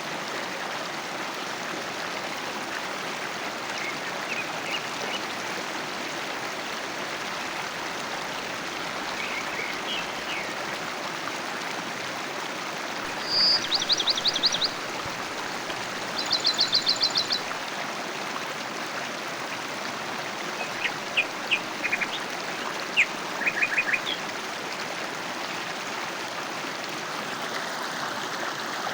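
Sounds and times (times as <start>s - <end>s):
river flowing: 0.0s - 28.9s
small birds chirping: 8.9s - 10.6s, 13.1s - 17.5s, 20.6s - 24.2s.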